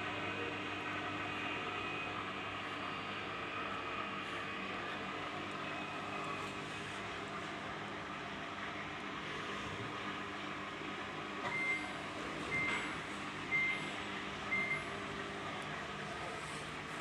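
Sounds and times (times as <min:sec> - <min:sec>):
washing machine hum: 0:00.0 - 0:17.0
washing machine short high beeps: 0:11.4 - 0:15.0.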